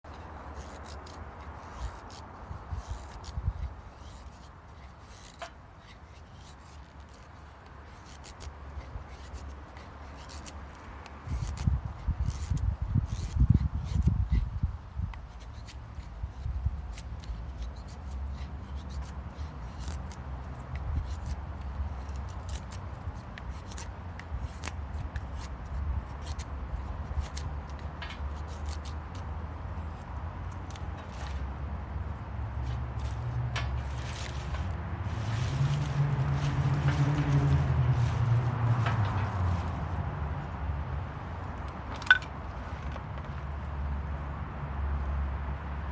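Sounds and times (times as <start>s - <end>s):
light scrapes and clicks: 0.1s - 31.7s, 32.5s - 40.2s.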